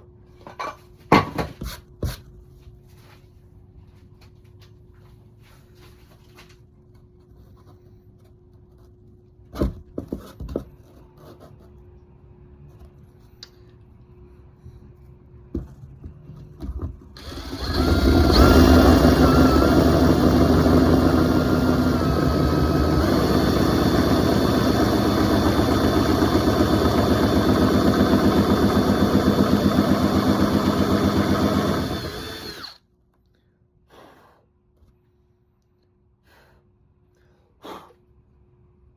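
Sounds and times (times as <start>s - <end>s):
power drill boring into foam: 17.2s - 32.8s.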